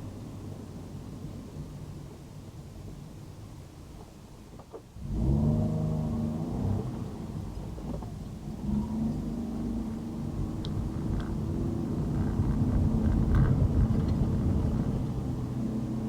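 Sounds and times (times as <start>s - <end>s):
car engine accelerating: 5.0s - 16.0s.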